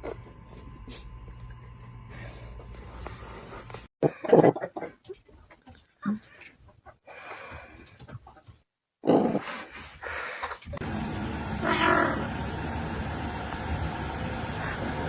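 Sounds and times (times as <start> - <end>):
animal crying out: 11.6 - 12.3.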